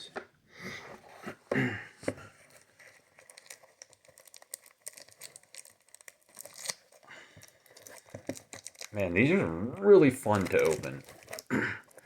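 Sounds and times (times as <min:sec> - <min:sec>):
foil wrapper crinkling: 0:02.5 - 0:09.4, 0:10.0 - 0:12.0.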